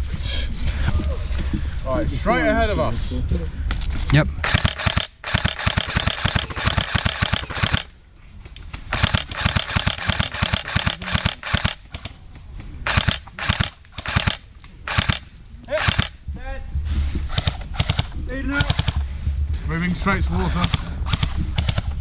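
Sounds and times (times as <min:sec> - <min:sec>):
airsoft rifle firing bursts: 0:04.4 - 0:08.0, 0:08.9 - 0:12.2, 0:12.8 - 0:16.2, 0:17.3 - 0:19.0, 0:20.6 - 0:22.0.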